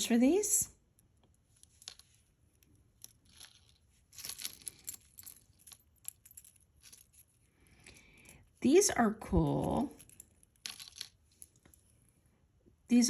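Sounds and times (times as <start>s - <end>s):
earrings clicking: 1.1s - 7.3s, 9.7s - 11.8s.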